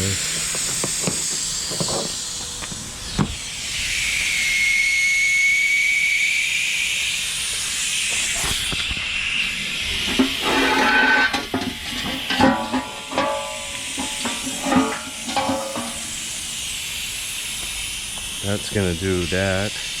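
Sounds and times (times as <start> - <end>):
air hissing from tire valve: 0.0 - 20.0
sharp ringing metal knocks: 10.1 - 16.4.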